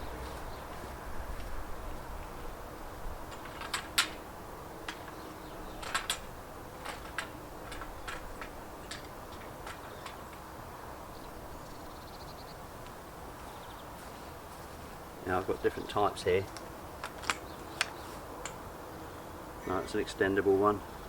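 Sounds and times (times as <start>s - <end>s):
poles and fittings clicking: 5.8s - 10.4s.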